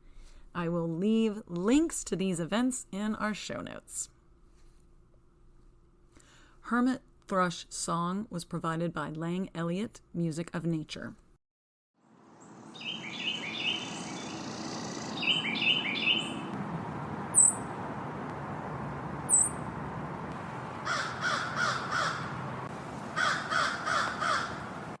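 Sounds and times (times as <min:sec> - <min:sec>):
harsh cawing calls: 0:20.8 - 0:22.5, 0:23.1 - 0:24.9.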